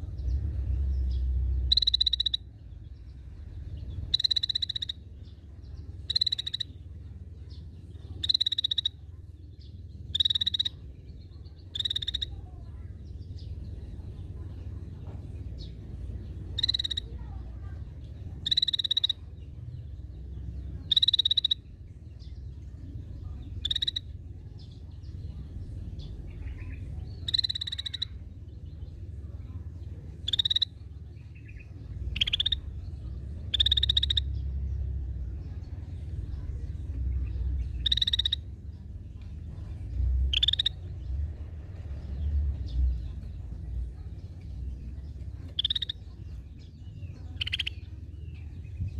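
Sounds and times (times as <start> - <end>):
low steady rumble: 0.0 - 48.9
bird giving harsh buzzy calls: 4.1 - 5.0, 16.6 - 17.2, 32.1 - 32.7.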